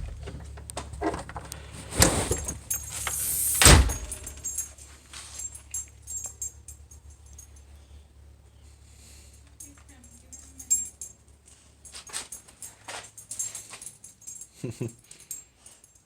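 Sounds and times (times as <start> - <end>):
door opening and shutting: 0.0 - 4.5
light metallic jingling: 1.5 - 16.0.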